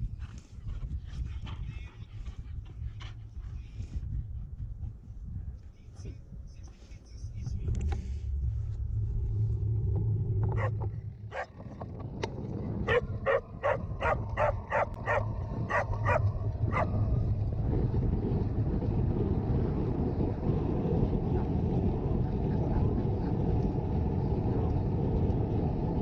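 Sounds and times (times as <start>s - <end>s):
wind on microphone: 0.0s - 26.0s
dog barking: 10.6s - 11.6s, 12.9s - 17.0s.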